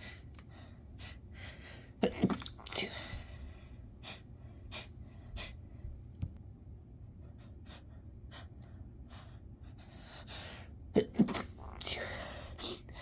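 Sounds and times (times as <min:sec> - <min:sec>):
stifled sneezes: 0:11.0 - 0:12.9.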